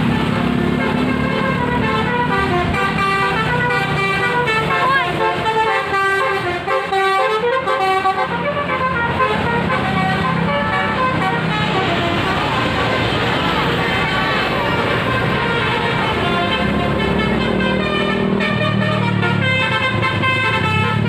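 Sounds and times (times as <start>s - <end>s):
bus engine running: 0.0s - 21.0s
bus musical horn tune: 0.0s - 21.0s.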